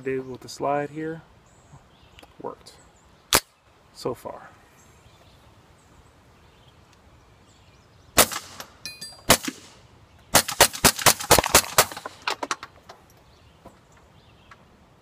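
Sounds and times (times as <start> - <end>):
suppressed pistol shots: 8.2 - 12.3.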